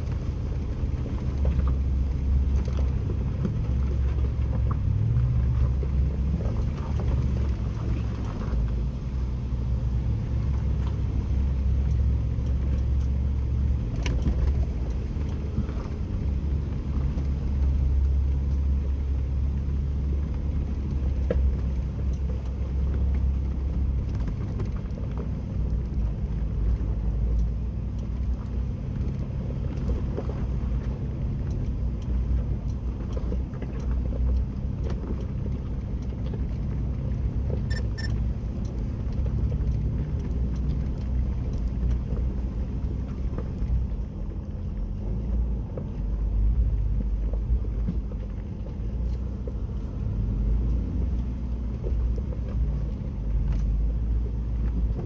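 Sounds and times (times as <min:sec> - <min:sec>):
engine low rumble: 0:00.0 - 0:55.0.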